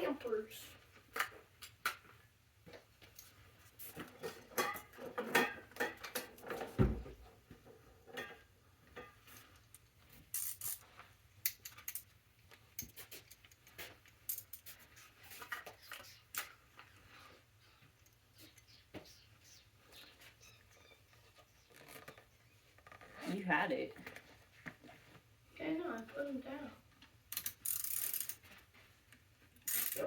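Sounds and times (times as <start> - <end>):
metal tools clinking: 9.0 - 16.6, 29.6 - 30.0.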